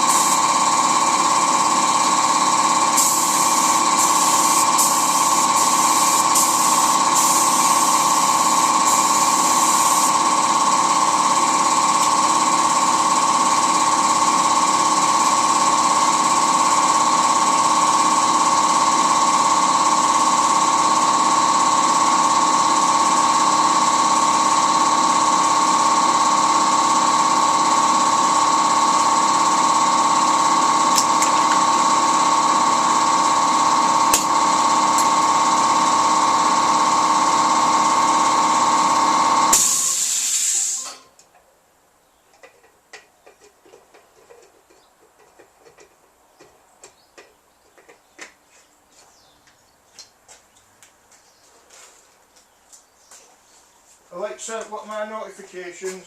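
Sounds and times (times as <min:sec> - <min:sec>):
air compressor motor humming: 0:00.0 - 0:41.0
high hiss bursts: 0:02.8 - 0:10.2, 0:39.4 - 0:41.0.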